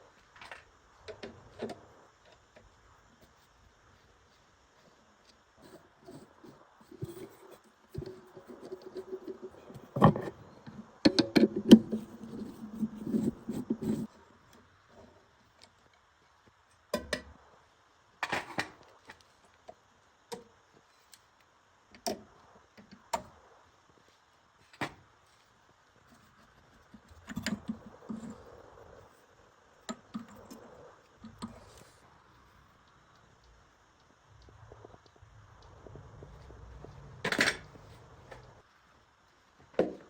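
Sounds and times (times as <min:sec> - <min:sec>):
scraping and rubbing metal parts: 0:11.3 - 0:14.1.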